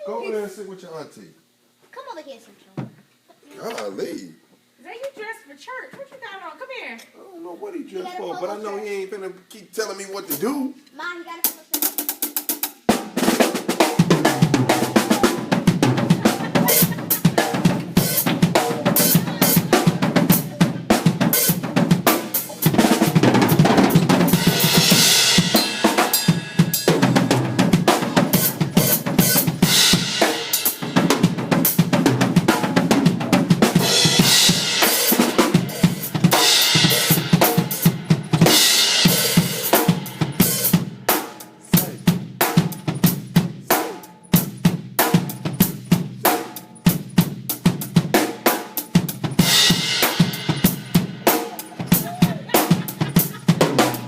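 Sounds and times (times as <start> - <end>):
snare and bass drum strokes: 11.6 - 54.0
cymbal crashes: 14.0 - 31.3, 33.8 - 40.9.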